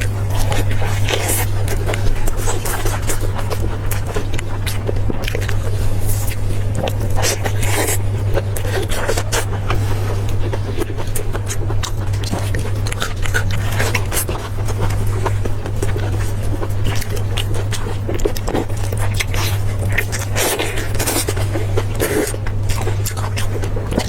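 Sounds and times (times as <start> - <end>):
chewing and biting meat: 0.0 - 24.0
steady low hum: 0.0 - 24.0.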